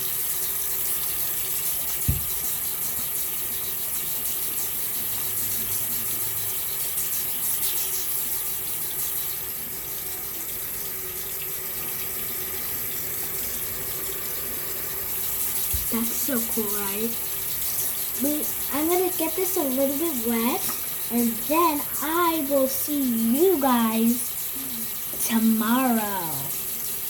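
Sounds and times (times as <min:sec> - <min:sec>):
tap water running into sink: 0:00.0 - 0:27.0
short knock: 0:02.1 - 0:02.3.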